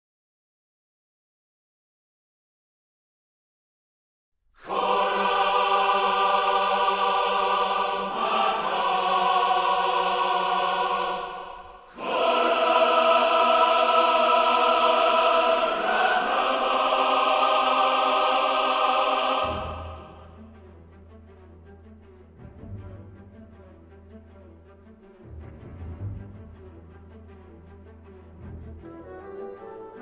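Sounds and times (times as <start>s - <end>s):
choir singing held chords: 4.6s - 20.4s.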